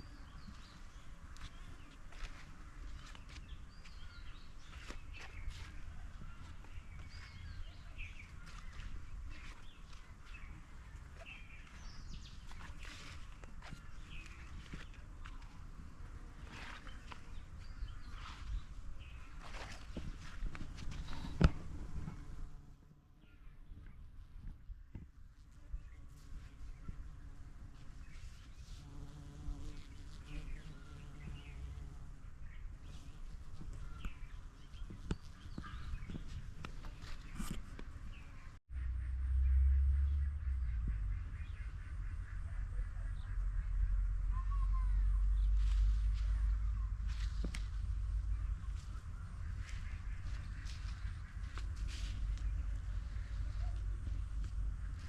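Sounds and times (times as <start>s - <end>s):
small birds chirping: 0.0s - 15.6s, 16.4s - 22.4s, 25.7s - 39.2s, 40.0s - 55.0s
bird chirps: 38.2s - 47.2s
low background rumble: 38.4s - 55.0s.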